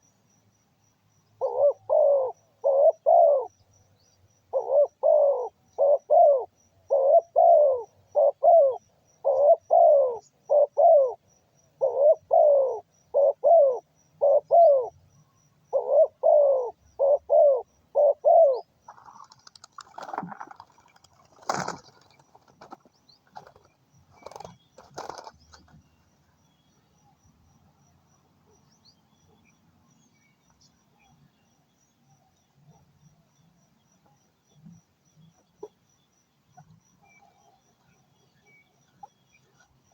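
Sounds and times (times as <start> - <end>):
dove cooing: 1.4 - 3.5, 4.5 - 11.2, 11.8 - 14.9, 15.7 - 25.7
knocks and rustles: 19.3 - 25.7.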